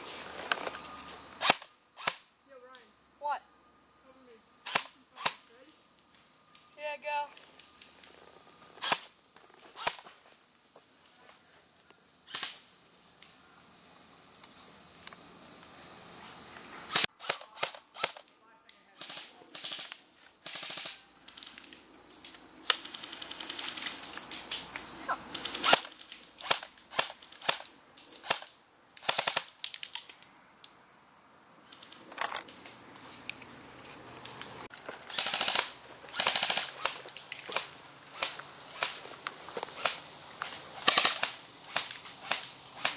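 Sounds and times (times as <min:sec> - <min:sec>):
crickets chirring: 0:00.0 - 0:42.9
airsoft guns firing pops: 0:01.4 - 0:02.2, 0:04.7 - 0:05.4, 0:08.8 - 0:09.1, 0:09.8 - 0:10.1, 0:12.3 - 0:12.6, 0:17.0 - 0:18.2, 0:19.0 - 0:21.6, 0:25.5 - 0:30.2, 0:35.1 - 0:39.0, 0:40.8 - 0:42.9.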